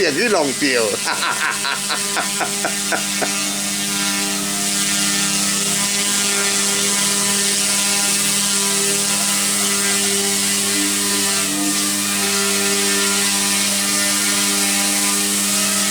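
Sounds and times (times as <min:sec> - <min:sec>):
rc helicopter whirring: 0:00.0 - 0:15.9.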